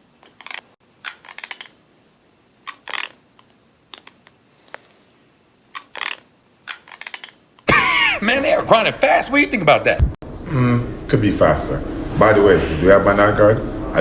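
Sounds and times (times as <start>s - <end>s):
teeth grinding: 5.7s - 7.9s.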